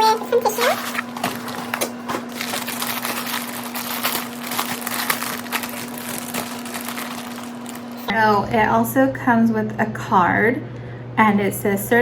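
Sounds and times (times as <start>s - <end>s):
plastic and tissue paper crinkling: 0.4s - 8.1s.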